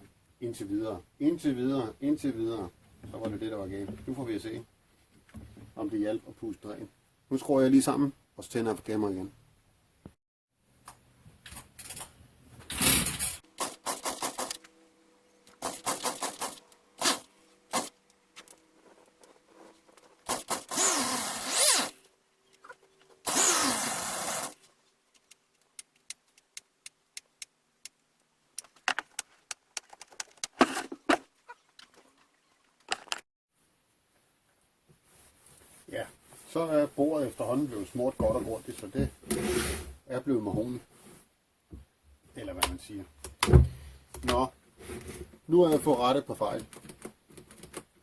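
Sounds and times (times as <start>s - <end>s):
hand tools clicking and rattling: 15.5s - 19.4s.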